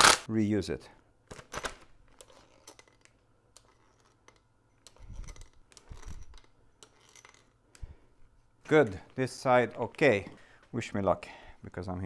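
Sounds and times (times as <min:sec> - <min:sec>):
metal tools and bolts clinking: 0:01.3 - 0:07.9, 0:08.6 - 0:10.3.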